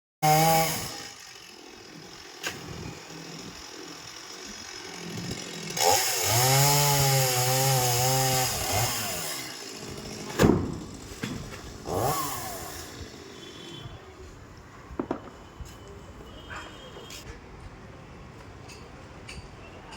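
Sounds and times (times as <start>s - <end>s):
chainsaw cutting wood: 0.2s - 13.4s.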